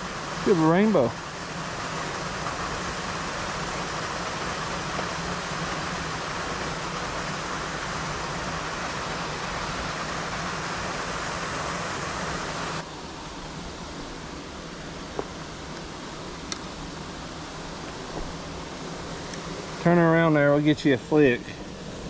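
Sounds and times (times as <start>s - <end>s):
water rushing over spillway: 0.0s - 13.2s.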